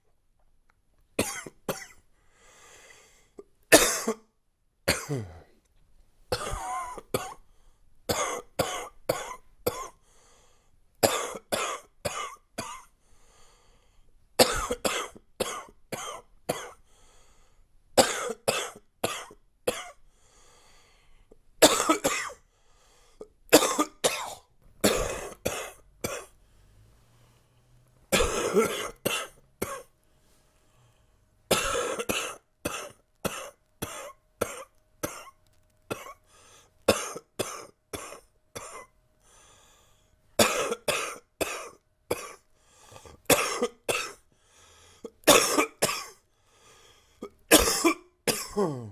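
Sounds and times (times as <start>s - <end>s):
man coughing chesty coughs: 1.2s - 2.0s, 3.7s - 4.3s, 4.9s - 5.5s, 6.3s - 7.4s, 8.1s - 10.0s, 11.0s - 12.9s, 14.4s - 16.8s, 18.0s - 20.0s, 21.6s - 22.4s, 23.5s - 26.3s, 28.1s - 29.8s, 31.5s - 35.3s, 36.9s - 38.9s, 40.4s - 42.4s, 43.0s - 44.2s, 45.2s - 46.2s, 47.5s - 48.9s.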